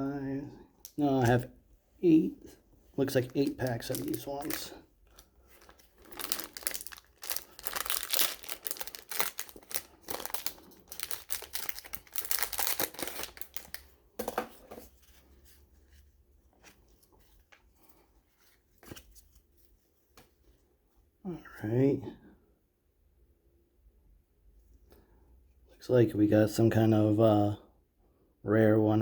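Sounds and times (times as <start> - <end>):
wrapper crinkling and tearing: 3.1 - 13.9.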